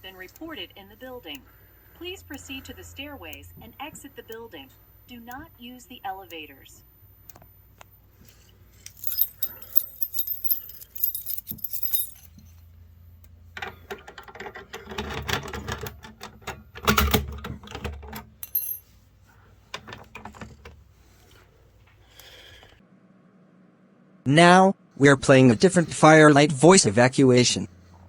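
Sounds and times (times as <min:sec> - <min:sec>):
keys jangling: 0:08.9 - 0:12.5, 0:18.4 - 0:18.9
knocks and rattles of handling: 0:08.9 - 0:12.6, 0:13.6 - 0:19.0, 0:19.6 - 0:21.4.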